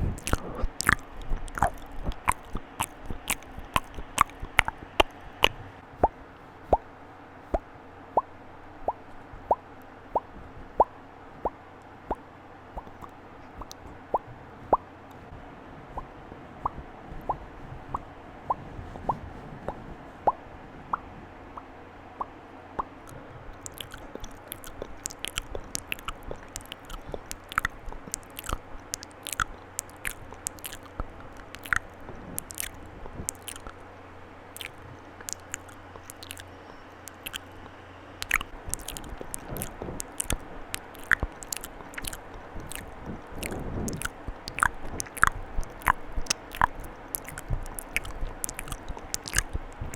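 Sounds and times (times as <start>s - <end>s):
wet mouth clicks and pops: 0.0s - 6.8s, 8.9s - 9.6s, 10.2s - 12.2s, 12.8s - 14.3s, 22.2s - 33.8s, 34.6s - 49.9s.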